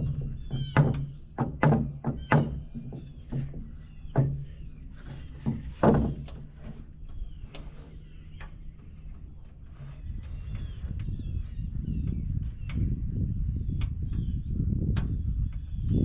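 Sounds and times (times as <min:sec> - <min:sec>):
irregular knocks and thunks: 0:00.0 - 0:06.8
steady low hum: 0:00.0 - 0:16.0.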